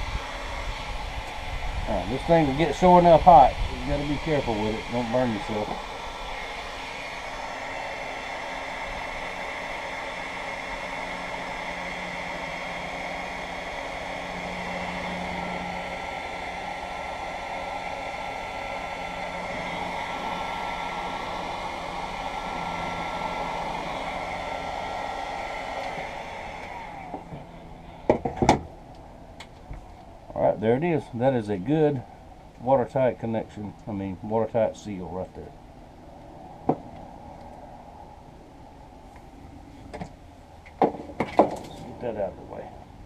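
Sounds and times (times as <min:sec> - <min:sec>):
heat gun blowing: 0:00.0 - 0:30.2.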